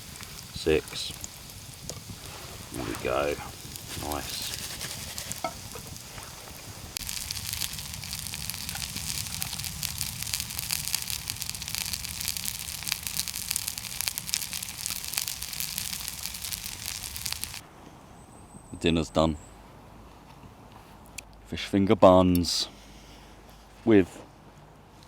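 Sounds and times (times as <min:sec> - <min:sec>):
fish fingers sizzling in a pan: 0:00.0 - 0:17.6.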